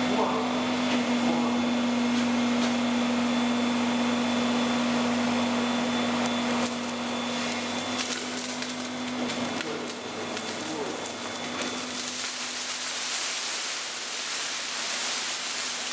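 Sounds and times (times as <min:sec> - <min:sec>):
crackles: 0:06.6 - 0:15.9
rushing plant noise: 0:10.5 - 0:15.9.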